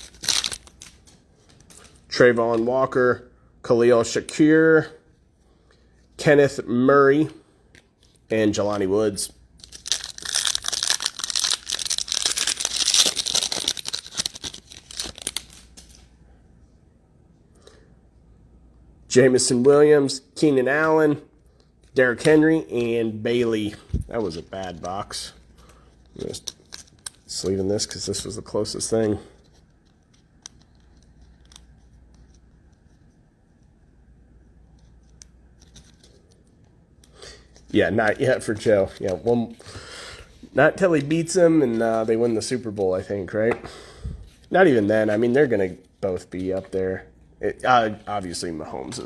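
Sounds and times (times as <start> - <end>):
wrapper tearing and crinkling: 0.0 - 1.1, 9.6 - 16.0.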